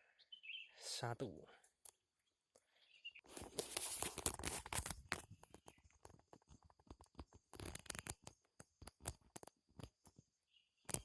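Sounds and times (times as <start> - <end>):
rustling and crackling: 3.3 - 11.0.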